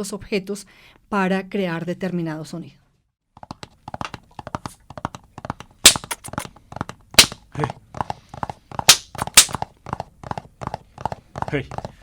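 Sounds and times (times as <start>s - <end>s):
knocks in a galloping rhythm: 3.4s - 12.0s.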